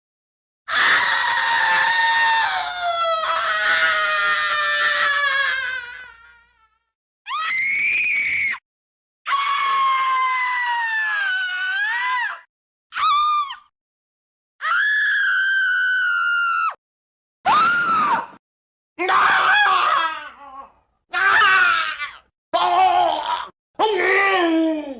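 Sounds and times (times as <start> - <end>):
high-pitched human screams: 0.7 - 6.1, 7.3 - 8.6, 9.3 - 13.7, 14.6 - 16.8, 17.5 - 18.4, 19.0 - 20.2, 21.1 - 24.9.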